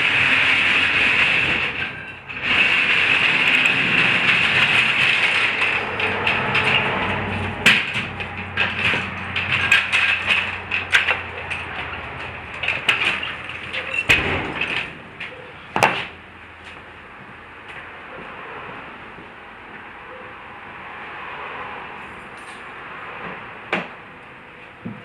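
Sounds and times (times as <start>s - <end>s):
tools and wheel parts knocking: 0.0s - 16.3s
steady background noise: 0.0s - 25.0s.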